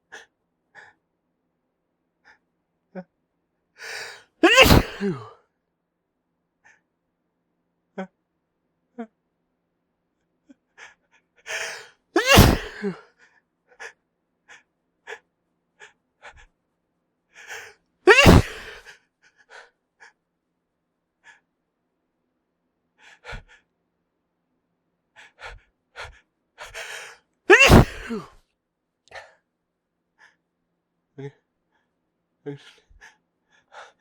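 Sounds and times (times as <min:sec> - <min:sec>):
short hitching gasps: 0:03.8 - 0:05.3, 0:10.8 - 0:13.0, 0:17.4 - 0:20.2, 0:23.0 - 0:23.6, 0:25.2 - 0:28.3
man sneezing hard: 0:04.4 - 0:05.3, 0:12.2 - 0:13.0, 0:18.1 - 0:18.9, 0:27.5 - 0:28.4.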